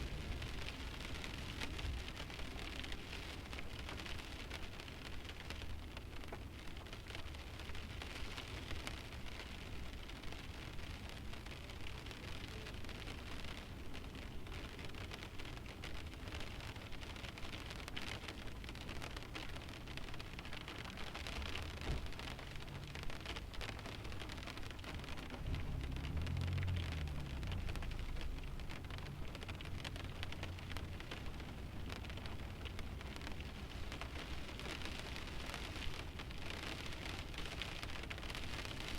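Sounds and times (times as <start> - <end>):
rain pattering on windshield: 0.0 - 38.9
low rumble: 24.1 - 33.6.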